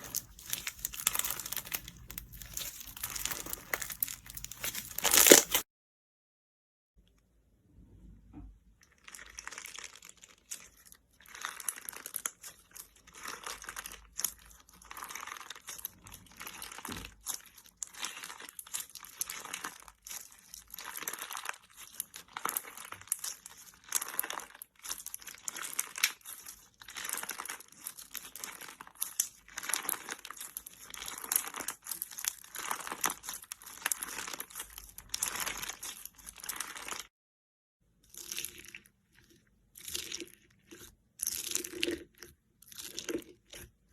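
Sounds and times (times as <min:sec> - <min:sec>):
slime crackling and popping: 0:00.0 - 0:05.6, 0:09.0 - 0:37.1.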